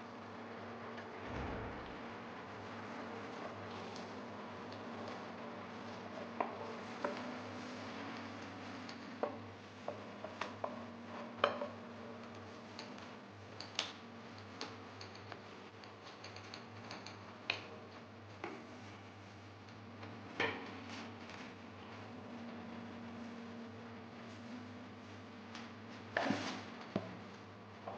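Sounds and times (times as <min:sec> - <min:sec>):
steady low hum: 0:00.0 - 0:09.8.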